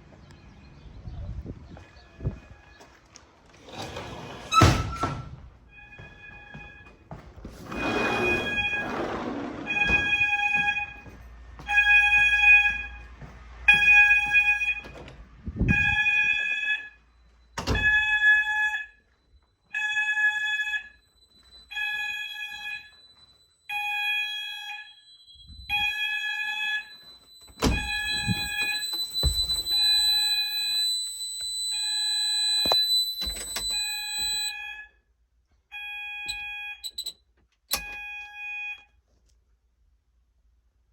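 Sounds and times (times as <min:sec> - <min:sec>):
fire alarm pulsing tone: 0:05.7 - 0:07.1, 0:07.7 - 0:13.1, 0:13.7 - 0:15.0, 0:15.7 - 0:35.0, 0:35.7 - 0:38.9
higher steady alarm tone: 0:19.7 - 0:34.9, 0:35.8 - 0:37.1
thumps: 0:27.5 - 0:31.6.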